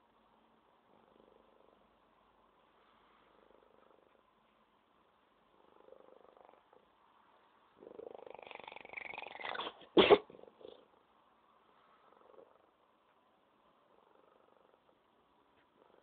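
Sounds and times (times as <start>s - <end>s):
cat purring: 0.7s - 16.0s
cat sneezing: 9.4s - 10.4s.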